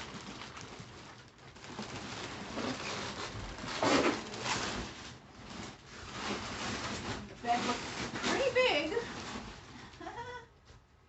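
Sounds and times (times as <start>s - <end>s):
mattress rubbing and rustling: 1.9s - 9.7s
mattress scrapes: 2.3s - 9.7s.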